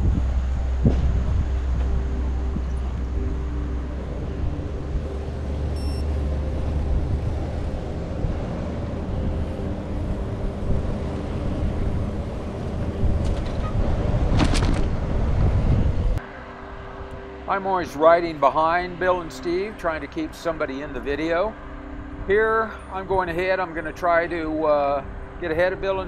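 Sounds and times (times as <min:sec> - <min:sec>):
wind rushing over microphone: 0:00.0 - 0:17.8
road rumble: 0:00.0 - 0:26.0
short high beep: 0:05.7 - 0:06.1.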